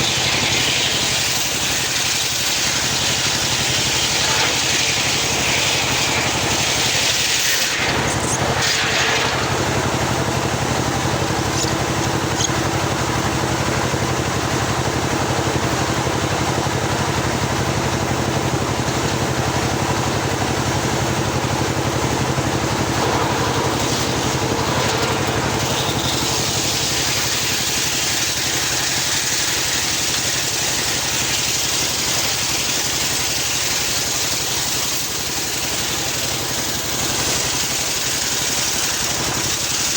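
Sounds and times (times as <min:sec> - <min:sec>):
circular saw ripping through log: 0:00.0 - 0:12.8, 0:21.4 - 0:39.9.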